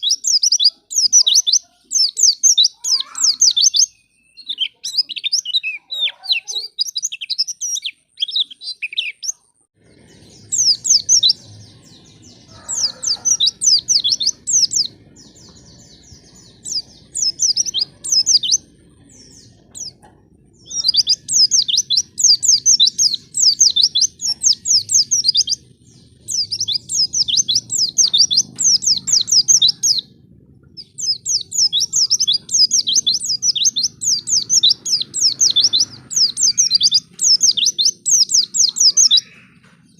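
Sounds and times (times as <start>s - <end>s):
bird chirping high: 0.0s - 39.9s
faint low hum: 9.8s - 36.2s.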